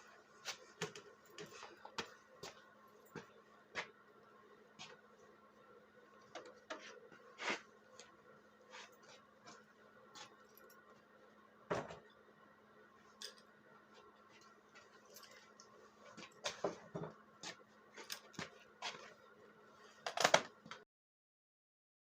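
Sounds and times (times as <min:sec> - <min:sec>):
faint steady hum: 0:00.0 - 0:20.8
tools and metal parts clattering: 0:15.1 - 0:15.5.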